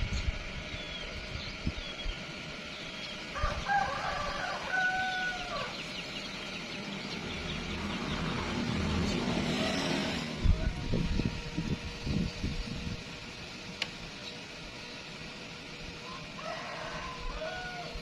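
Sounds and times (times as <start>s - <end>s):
rooster crowing: 3.3s - 6.0s, 16.0s - 18.0s.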